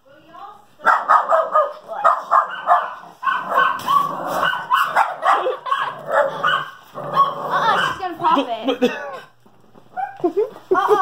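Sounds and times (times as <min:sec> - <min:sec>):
dog barking and yipping: 0:00.8 - 0:08.1, 0:09.9 - 0:10.3.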